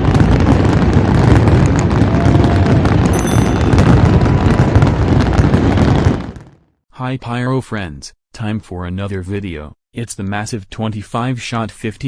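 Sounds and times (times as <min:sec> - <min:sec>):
fireworks bangs and crackling: 0:00.0 - 0:06.6
low rumble: 0:03.2 - 0:05.7.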